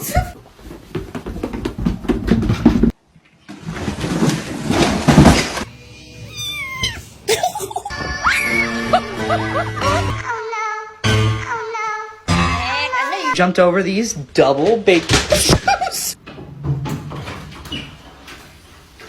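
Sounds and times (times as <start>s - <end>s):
cat meowing: 6.2s - 7.2s.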